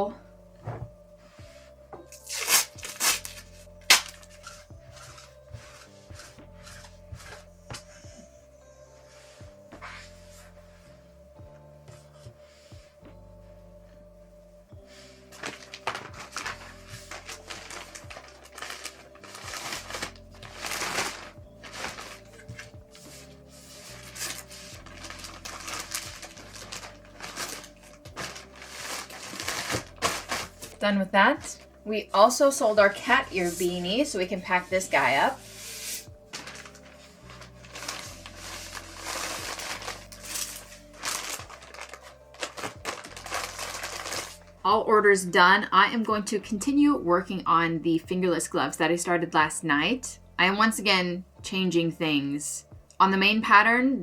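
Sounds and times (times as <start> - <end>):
background music: 0.0 - 54.0
packing materials rustling and scraping: 0.6 - 11.1, 14.8 - 31.8, 32.6 - 44.6.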